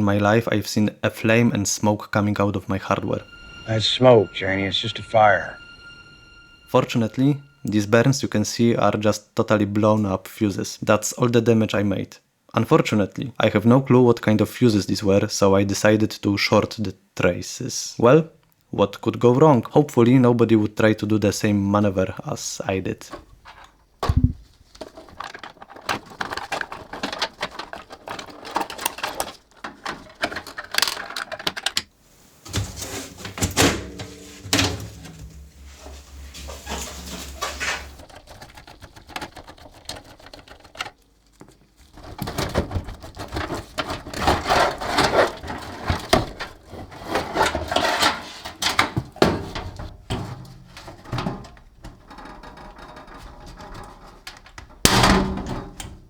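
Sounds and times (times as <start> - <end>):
small hard parts clattering: 22.8 - 56.0
low steady hum: 32.0 - 38.2.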